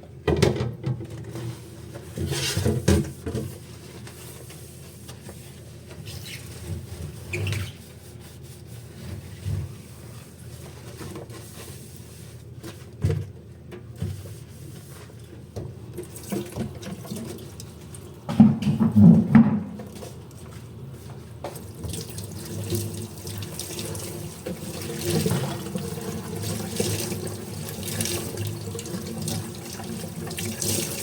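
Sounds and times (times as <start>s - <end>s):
dishes knocking: 18.3s - 19.8s.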